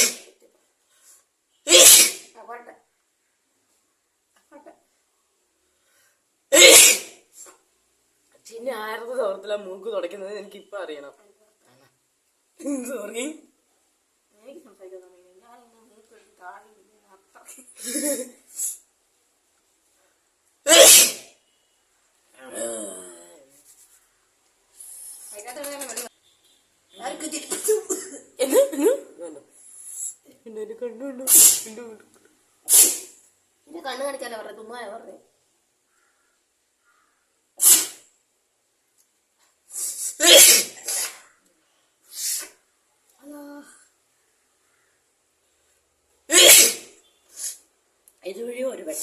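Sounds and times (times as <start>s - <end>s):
person sneezing: 0.0s - 0.3s, 1.7s - 2.3s, 6.5s - 7.5s, 20.7s - 21.3s, 31.3s - 31.7s, 32.7s - 33.2s, 37.6s - 38.0s, 39.7s - 41.3s, 42.1s - 42.6s, 46.3s - 47.6s.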